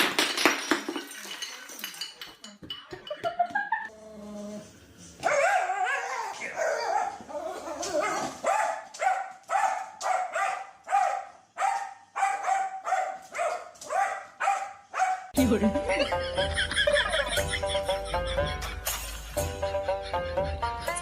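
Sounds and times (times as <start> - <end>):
dog barking: 5.2 - 7.2, 8.0 - 15.4.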